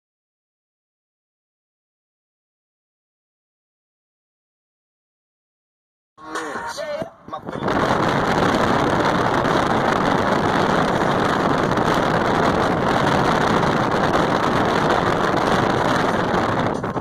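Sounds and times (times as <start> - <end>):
wind buffeting microphone: 7.2 - 17.0.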